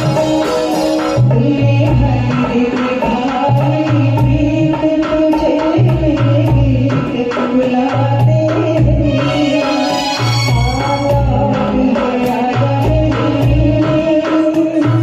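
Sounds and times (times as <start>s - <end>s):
sustained melody line: 0.0s - 2.8s, 8.8s - 12.5s
tabla rhythm: 0.0s - 15.0s.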